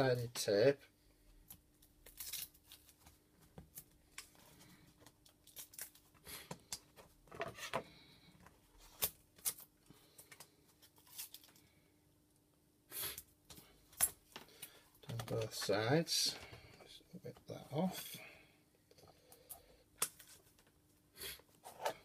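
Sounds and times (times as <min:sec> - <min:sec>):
tape tearing: 0:02.0 - 0:03.0.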